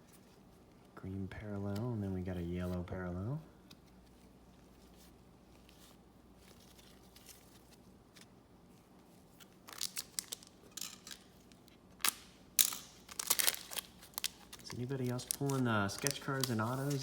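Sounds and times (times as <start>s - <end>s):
foil wrapper crinkling: 9.4s - 17.0s
foil wrapper tearing: 9.6s - 10.5s, 12.0s - 17.0s.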